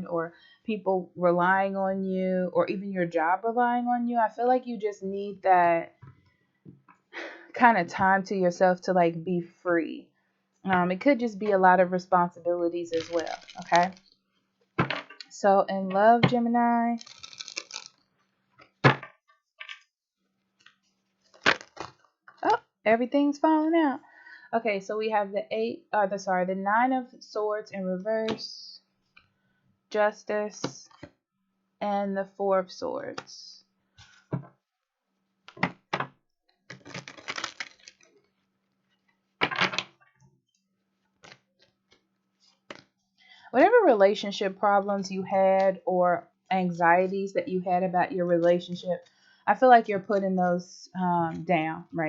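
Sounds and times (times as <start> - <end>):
cards being shuffled: 12.9 - 14.0, 17.0 - 18.0, 20.7 - 22.1, 36.7 - 38.1, 41.2 - 42.9
cards snapping: 13.0 - 14.0, 17.0 - 18.0, 21.3 - 22.0, 36.7 - 38.0.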